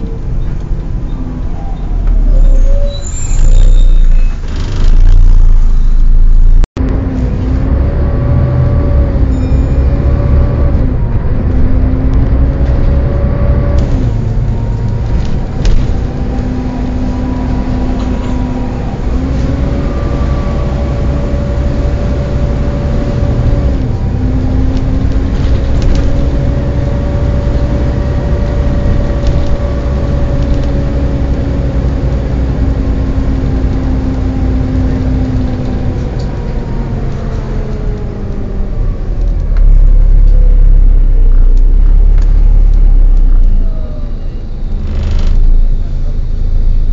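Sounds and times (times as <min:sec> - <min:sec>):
bus engine rumble: 0:00.0 - 0:46.9.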